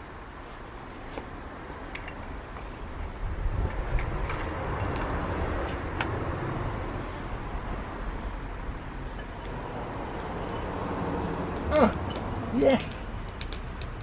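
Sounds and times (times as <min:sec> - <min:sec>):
sharp crackles and pops: 0:11.2 - 0:14.0.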